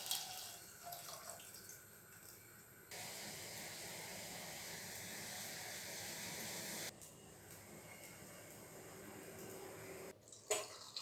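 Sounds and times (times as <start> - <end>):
faint stove hiss: 2.3 - 10.2.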